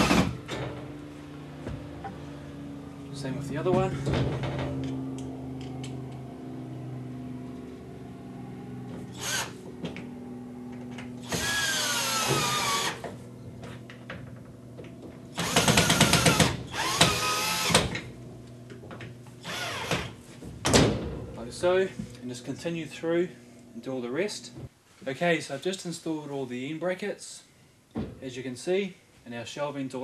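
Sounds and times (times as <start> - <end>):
cordless drill driving screws: 9.1 - 9.6, 11.2 - 13.0, 15.4 - 17.9, 19.4 - 20.1.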